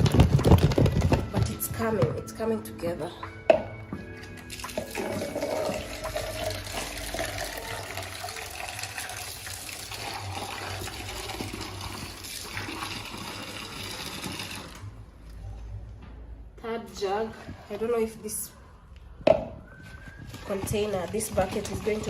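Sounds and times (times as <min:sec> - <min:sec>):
water pouring into a bucket: 0:04.4 - 0:14.9, 0:20.6 - 0:22.0.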